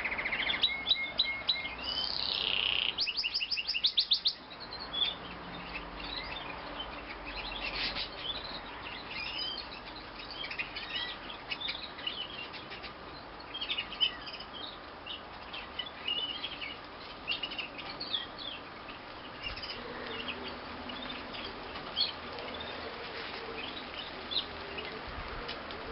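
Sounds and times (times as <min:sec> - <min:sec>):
canary chirping and twittering: 0:00.0 - 0:24.9
faint steady hiss: 0:00.0 - 0:25.9.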